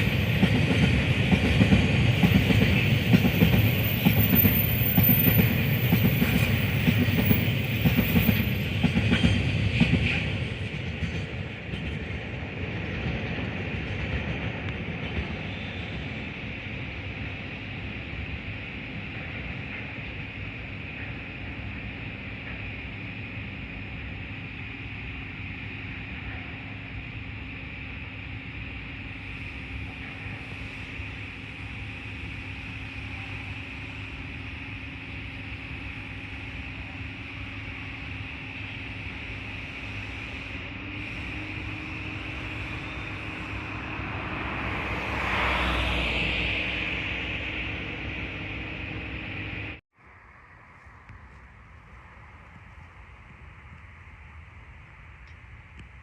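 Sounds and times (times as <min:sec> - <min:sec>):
traffic hum: 0:39.8 - 0:56.0
vehicle passing close: 0:43.0 - 0:49.2.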